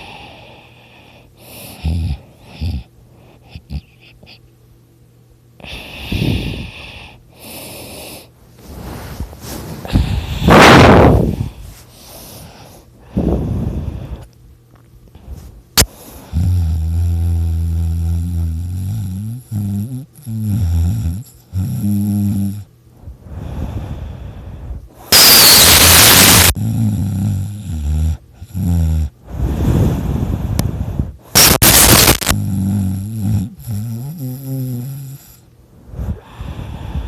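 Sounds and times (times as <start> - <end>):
person snoring loudly: 1.4 - 2.9, 16.2 - 22.7, 25.1 - 35.4
rushing blast of breath: 23.3 - 26.6.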